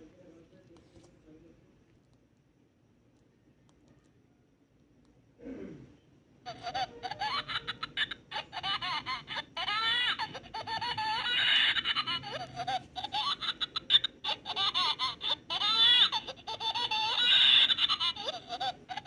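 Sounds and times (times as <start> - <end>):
baby laughing through speaker: 6.5 - 19.0.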